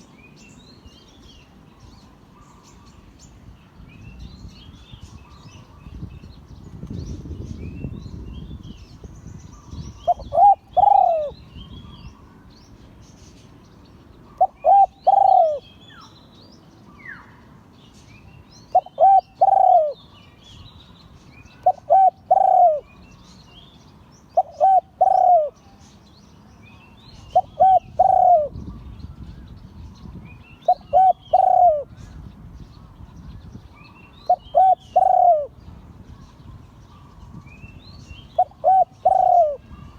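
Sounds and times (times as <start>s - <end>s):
small birds chirping: 0.0s - 39.9s
dove cooing: 10.0s - 11.4s, 14.4s - 15.6s, 18.7s - 20.0s, 21.6s - 22.9s, 24.4s - 25.6s, 27.3s - 28.6s, 30.7s - 31.9s, 34.3s - 35.6s, 38.3s - 39.9s.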